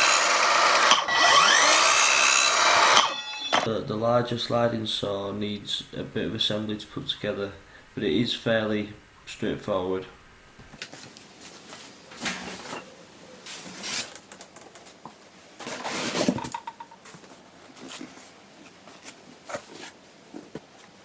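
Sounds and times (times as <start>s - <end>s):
knocks and clicks of saw parts: 0.7s - 1.2s
scraping or rustling: 13.4s - 15.0s, 15.6s - 20.5s.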